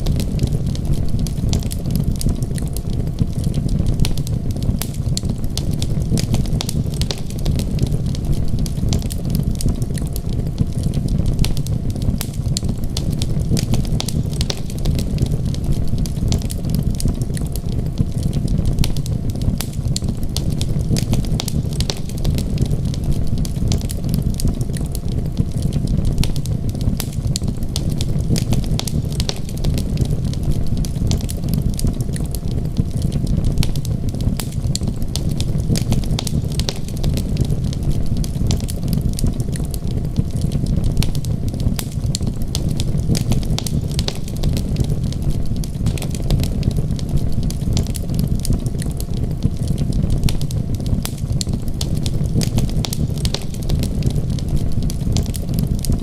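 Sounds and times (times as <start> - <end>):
wood fire crackling: 0.0 - 56.0.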